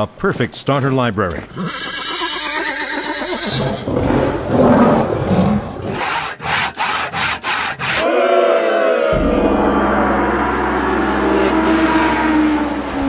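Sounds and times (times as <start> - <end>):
sharp strokes: 5.9 - 8.1
noisy sound effects: 8.0 - 13.0
wavering pitched sound: 9.1 - 13.0.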